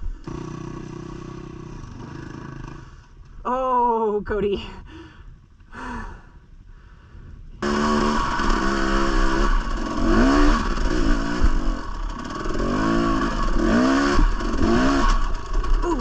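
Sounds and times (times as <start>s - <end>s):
dirt bike engine revving: 0.0s - 3.1s, 7.6s - 16.0s.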